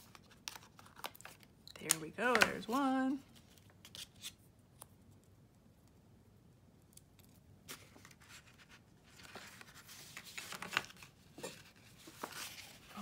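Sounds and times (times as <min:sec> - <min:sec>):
paper rustling and crinkling: 0:00.0 - 0:01.5, 0:07.6 - 0:13.0.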